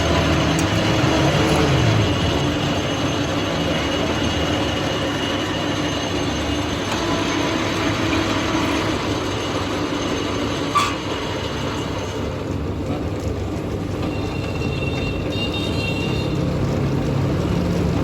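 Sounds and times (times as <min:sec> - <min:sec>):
metal lathe running: 0:00.0 - 0:18.0.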